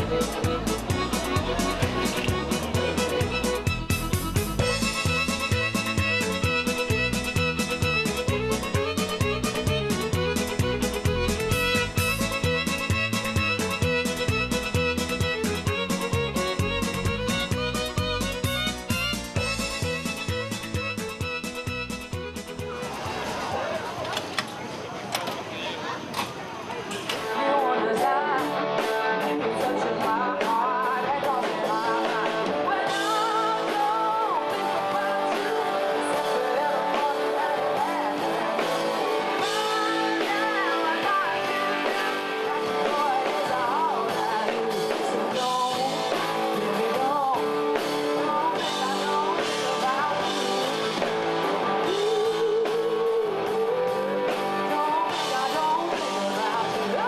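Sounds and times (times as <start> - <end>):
rock song with vocals: 0.0 - 21.4, 27.2 - 57.0.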